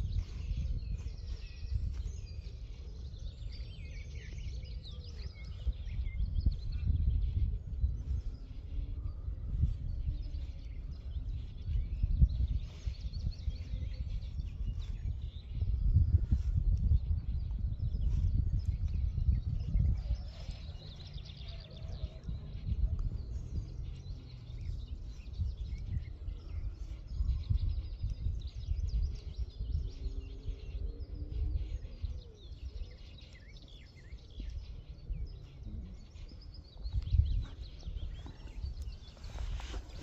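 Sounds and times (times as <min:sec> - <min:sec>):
small birds chirping: 0:00.0 - 0:40.0
wind buffeting microphone: 0:00.0 - 0:40.0.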